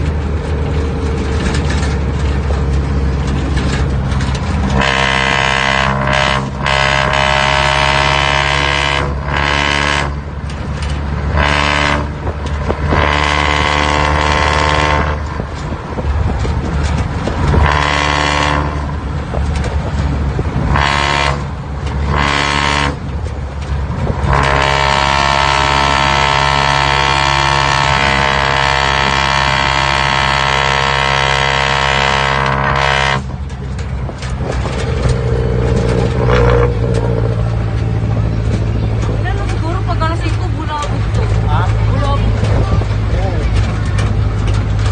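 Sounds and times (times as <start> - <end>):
diesel engine hum: 0.0 - 44.9
horn-like muffler tone: 4.8 - 10.2, 11.3 - 12.3, 12.9 - 15.3, 17.6 - 18.9, 20.7 - 21.5, 22.1 - 23.0, 24.3 - 33.3.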